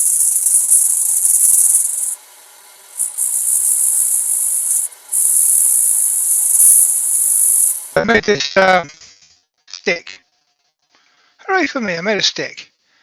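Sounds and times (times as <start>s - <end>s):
sandpaper hissing on spinning wood: 0.0s - 8.0s.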